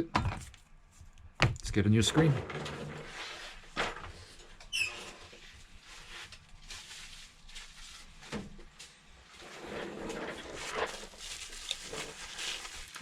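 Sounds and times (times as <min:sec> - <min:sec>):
short squeak: 0:04.7 - 0:05.1
faint packaging rustling: 0:05.5 - 0:08.9, 0:10.4 - 0:13.0.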